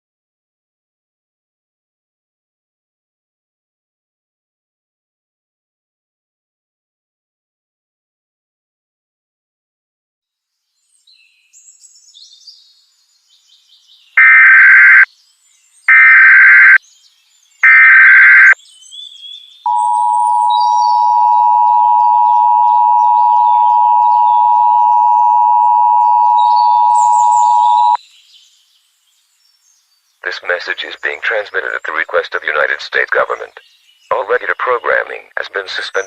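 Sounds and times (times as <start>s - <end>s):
data burst tones: 14.2s - 15.0s, 15.9s - 16.8s, 17.6s - 18.6s, 19.7s - 28.0s
two-tone attention signal: 14.2s - 15.0s, 15.9s - 16.8s, 17.6s - 18.6s, 19.7s - 28.0s
faint bird chirps: 17.6s - 28.2s.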